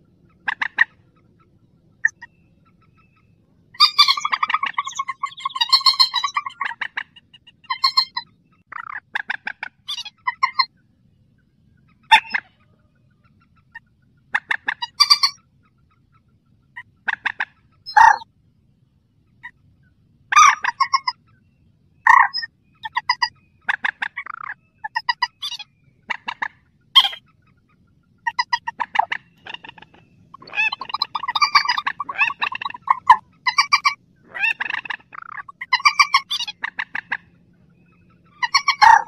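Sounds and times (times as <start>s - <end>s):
rail bird calling in pulsed bursts: 2.0s - 8.8s, 28.2s - 37.2s.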